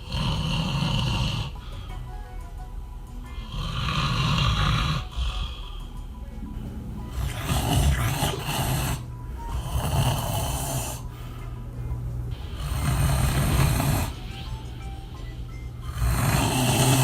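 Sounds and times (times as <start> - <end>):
person snoring loudly: 0.0 - 1.9, 3.3 - 5.9, 7.0 - 11.2, 12.3 - 14.4, 15.8 - 17.0.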